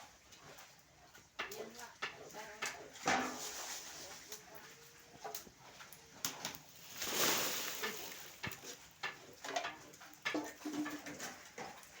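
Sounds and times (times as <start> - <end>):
crackers sizzling in hot oil: 5.3 - 12.0.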